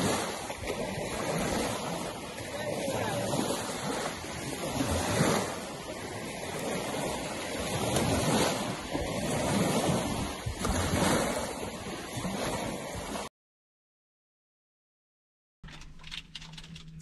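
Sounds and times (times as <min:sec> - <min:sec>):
sea waves washing onto shore: 0:00.0 - 0:13.3.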